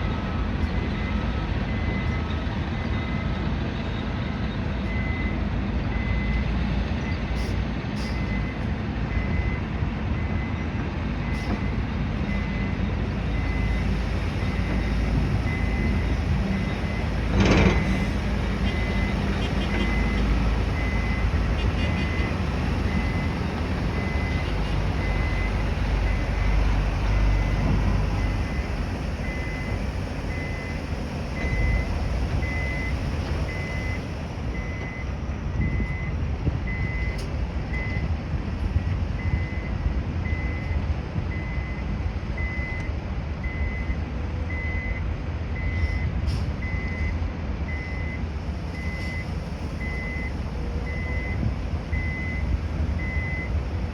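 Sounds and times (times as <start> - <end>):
heavy engines rumbling: 0.0 - 53.9
reversing alarm beeping: 12.3 - 38.1, 42.4 - 43.9, 45.6 - 53.9.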